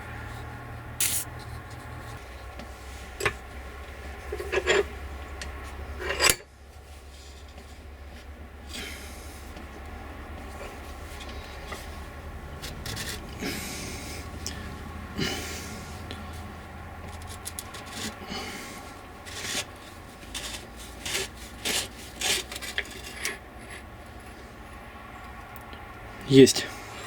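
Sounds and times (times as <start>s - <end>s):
metal scraping and rubbing: 1.0s - 6.5s, 10.5s - 13.9s, 17.0s - 23.9s.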